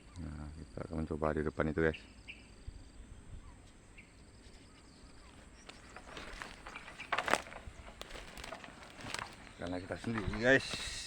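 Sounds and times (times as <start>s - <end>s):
footsteps through dry brush: 4.5s - 11.0s.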